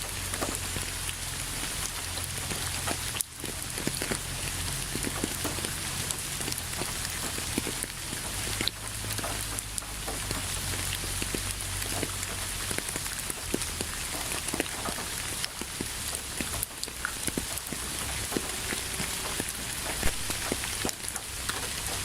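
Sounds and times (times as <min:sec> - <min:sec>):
low steady rumble: 0:00.0 - 0:22.0
rain drops tapping: 0:00.0 - 0:22.0.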